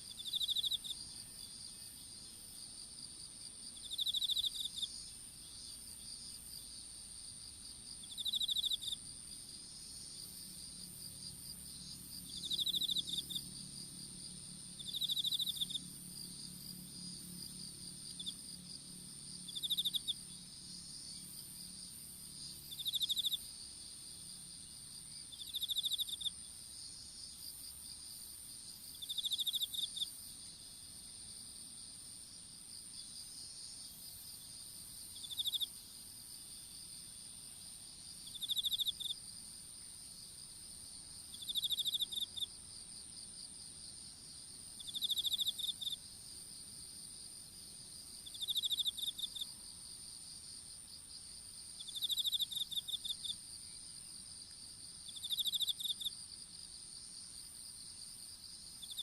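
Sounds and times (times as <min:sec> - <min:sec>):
insects trilling: 0:00.0 - 0:59.0
pulsed insect chirp: 0:03.8 - 0:06.2, 0:08.0 - 0:09.0, 0:10.0 - 0:23.6, 0:24.3 - 0:26.4, 0:27.5 - 0:30.4, 0:33.4 - 0:36.9, 0:38.1 - 0:39.2, 0:41.2 - 0:42.6, 0:44.8 - 0:46.2, 0:47.9 - 0:49.5, 0:50.4 - 0:54.0, 0:55.0 - 0:56.2, 0:58.5 - 0:59.0.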